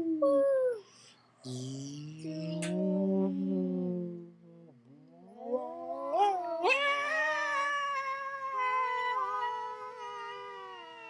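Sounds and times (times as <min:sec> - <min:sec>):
long high wail: 0:06.0 - 0:11.0.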